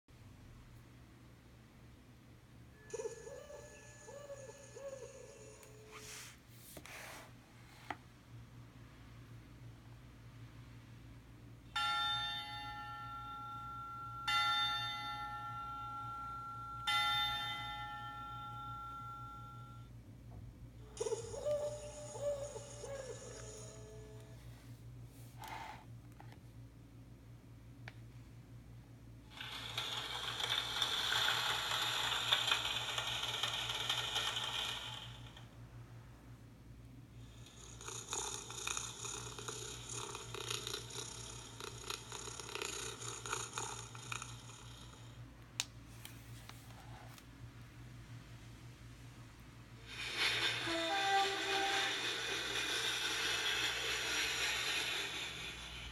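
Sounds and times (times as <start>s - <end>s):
recorded bell tolling: 11.8s - 19.9s.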